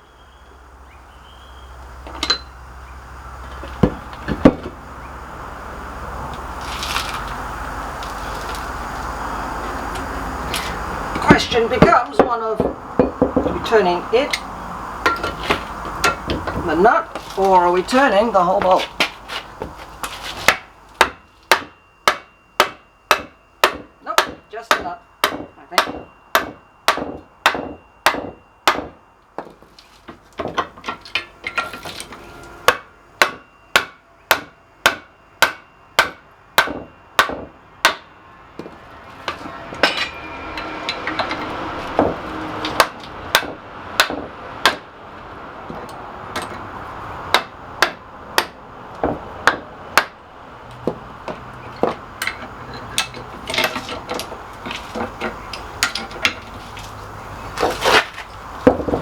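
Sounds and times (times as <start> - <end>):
steady noise: 0.0 - 29.3.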